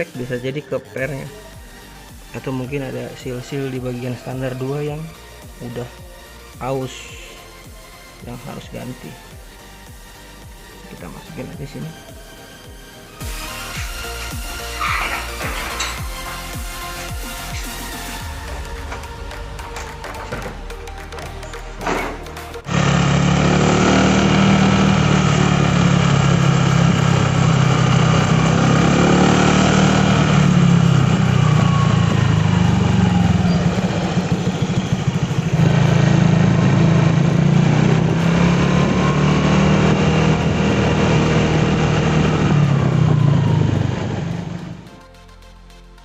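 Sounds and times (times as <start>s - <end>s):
scooter engine running: 22.2s - 44.9s.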